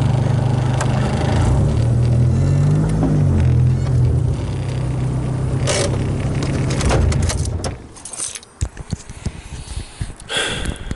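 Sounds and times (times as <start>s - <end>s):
car engine running: 0.0s - 7.9s.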